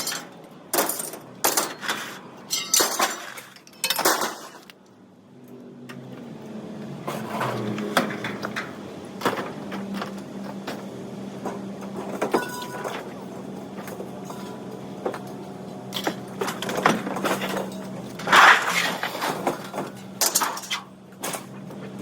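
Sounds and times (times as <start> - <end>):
metal scrap clanking onto pile: 0.0 - 4.7, 12.1 - 13.1, 16.0 - 21.5
steady engine hum: 4.4 - 22.0.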